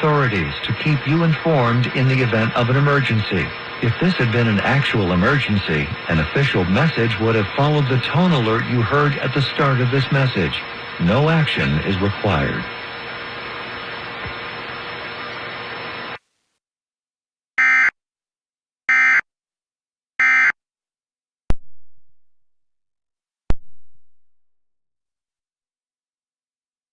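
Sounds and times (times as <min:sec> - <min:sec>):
steady hiss: 0:00.0 - 0:14.2
buzzy electronic data bursts: 0:00.0 - 0:16.2.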